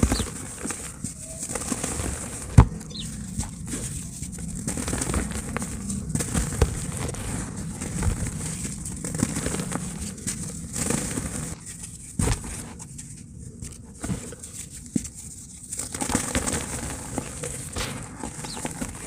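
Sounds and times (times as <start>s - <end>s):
cement lumps crumbling: 0.0s - 19.0s.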